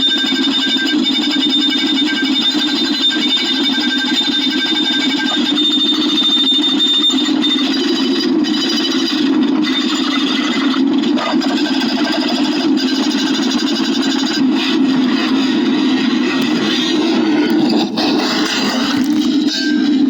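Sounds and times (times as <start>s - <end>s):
thin high steady tone: 0.0s - 9.0s.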